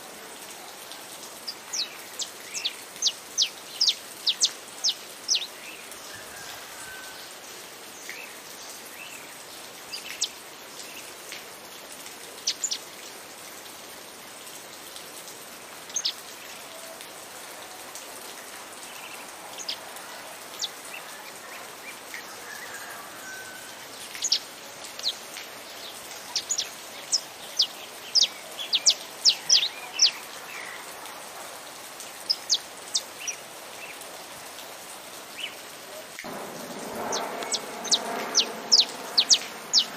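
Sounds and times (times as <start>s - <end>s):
rain hissing: 0.0s - 39.9s
finch chirping: 36.7s - 39.9s.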